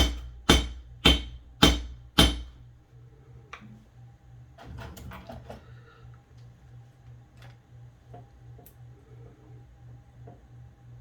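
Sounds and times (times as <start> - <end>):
hammer striking brass sheet: 0.0 - 2.6.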